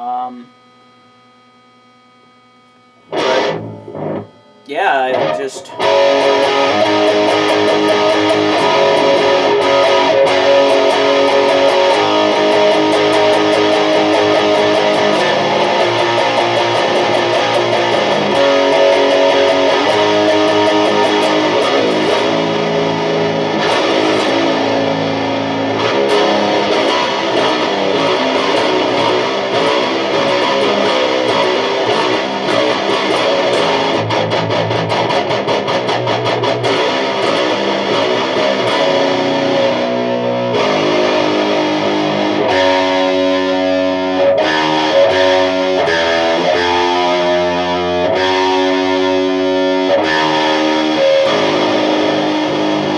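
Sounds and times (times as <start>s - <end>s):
distorted electric guitar riffs: 0.0s - 52.9s.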